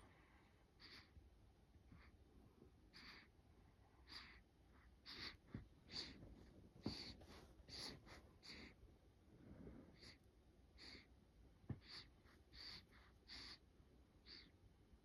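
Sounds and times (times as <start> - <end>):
baby snuffly breathing: 0.8 - 1.2, 2.9 - 3.3, 4.0 - 8.8, 9.9 - 10.2, 10.8 - 11.1, 11.7 - 13.7.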